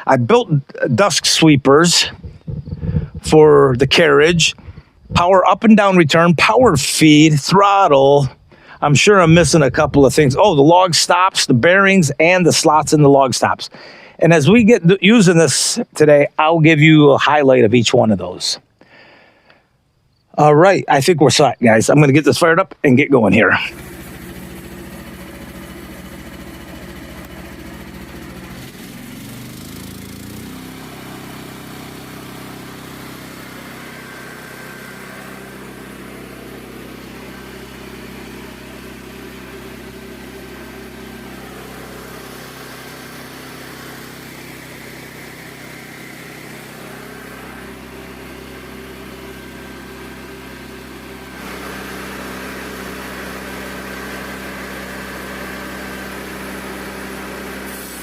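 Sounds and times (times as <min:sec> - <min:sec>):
small gas engine running: 0:00.0 - 0:11.3, 0:13.7 - 0:14.2, 0:23.5 - 0:58.0.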